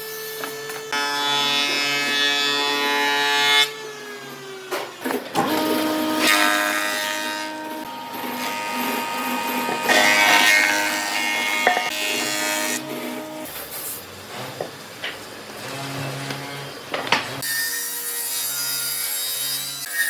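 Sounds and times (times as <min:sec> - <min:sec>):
power tool motor whining: 0:03.7 - 0:13.5.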